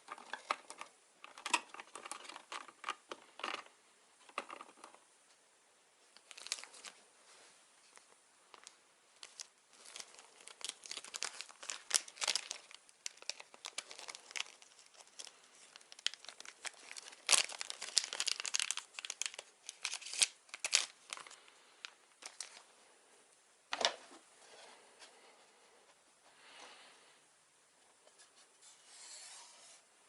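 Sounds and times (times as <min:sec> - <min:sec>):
plastic packaging crinkling: 0:00.0 - 0:03.7, 0:06.1 - 0:07.0, 0:07.9 - 0:22.7.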